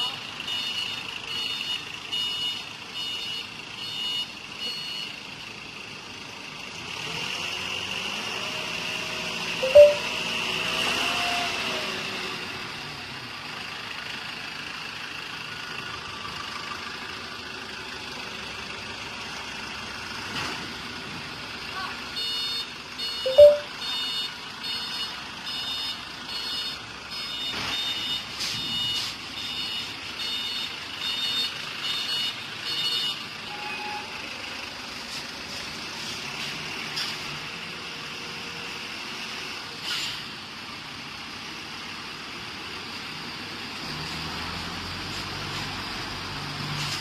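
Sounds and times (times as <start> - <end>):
electronic beep: 9.6 - 10.1, 23.3 - 23.7.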